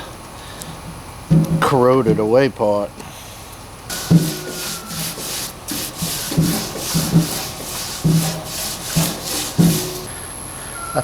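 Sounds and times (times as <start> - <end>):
putty scraping on metal: 3.9 - 10.1.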